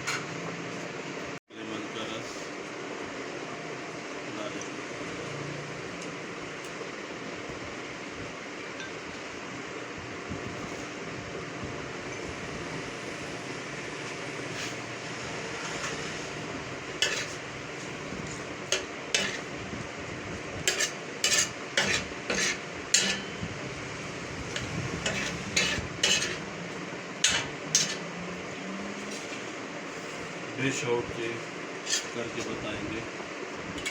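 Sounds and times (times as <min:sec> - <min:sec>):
spatula clanking on pan: 0:17.0 - 0:17.4, 0:18.7 - 0:19.4, 0:20.6 - 0:23.4, 0:24.6 - 0:26.4, 0:27.2 - 0:28.0.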